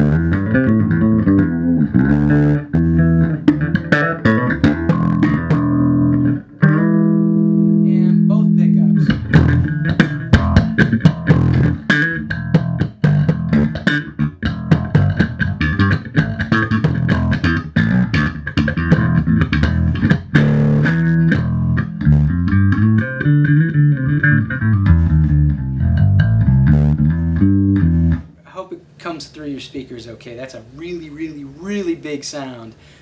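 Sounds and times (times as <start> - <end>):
electric bass plucked notes: 0.0 - 28.4.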